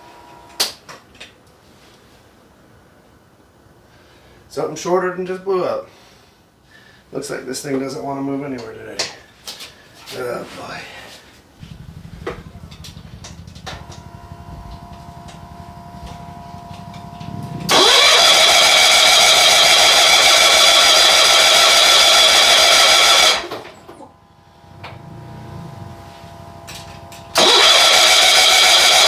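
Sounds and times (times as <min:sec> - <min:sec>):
loud rising whirring: 0:11.6 - 0:29.0
starter cranking engine: 0:11.6 - 0:29.0.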